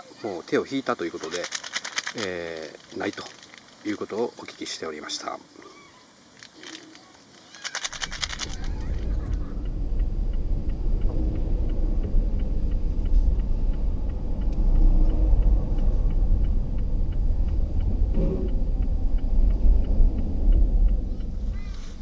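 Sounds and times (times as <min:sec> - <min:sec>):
wind buffeting microphone: 0:07.9 - 0:22.0.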